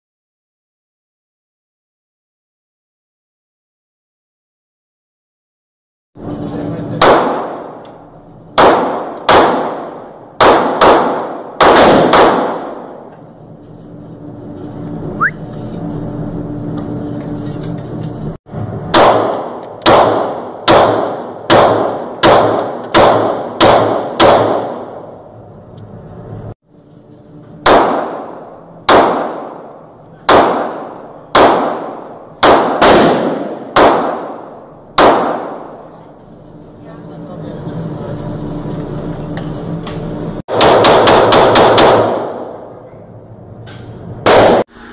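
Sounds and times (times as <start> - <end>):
pistol shots echoing: 6.9 - 13.1, 18.9 - 25.2, 27.6 - 36.0, 40.5 - 42.8, 44.2 - 44.7.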